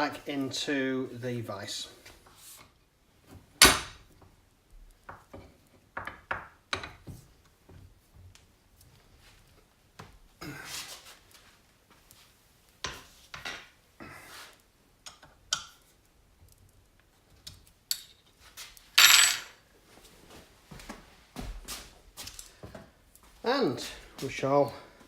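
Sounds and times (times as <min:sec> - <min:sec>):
metal parts clinking: 0:19.0 - 0:19.5.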